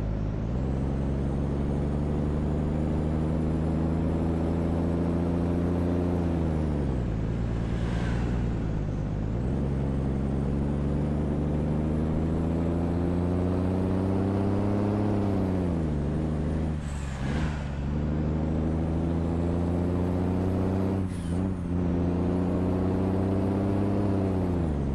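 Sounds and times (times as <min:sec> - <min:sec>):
truck engine rumbling: 0:00.0 - 0:24.9.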